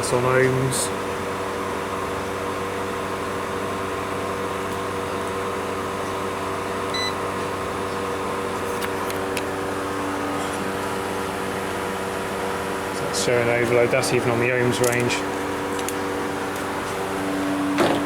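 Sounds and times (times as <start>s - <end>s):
machinery humming: 5.1s - 18.0s
multimeter beep: 6.9s - 7.2s.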